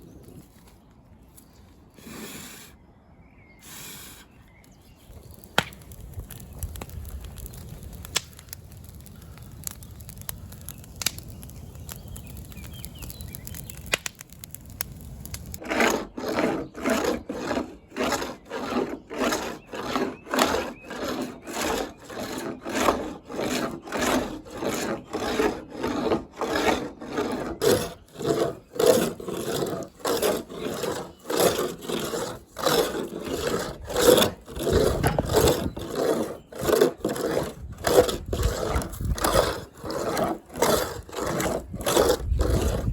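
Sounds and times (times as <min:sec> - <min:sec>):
hand saw cutting wood: 0:15.5 - 0:42.9.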